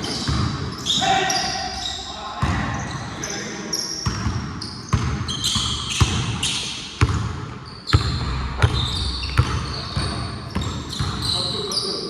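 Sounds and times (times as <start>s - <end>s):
basketball bouncing on court: 0.0s - 1.0s, 2.4s - 3.0s, 4.0s - 11.4s
sneakers squeaking on floor: 0.0s - 12.0s.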